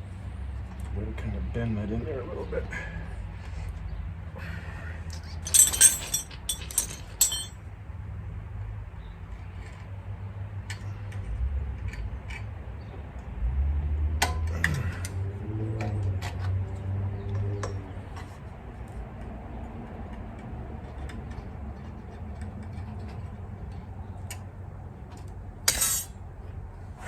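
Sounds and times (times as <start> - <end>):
metal tools clinking: 5.2 - 7.6, 25.7 - 26.1.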